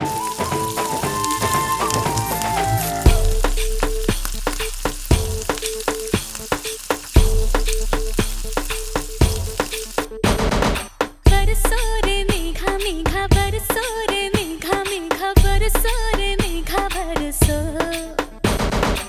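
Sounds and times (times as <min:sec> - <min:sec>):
omelette sizzling in a pan: 0:00.0 - 0:10.1
music with heavy bass beat: 0:02.2 - 0:13.8.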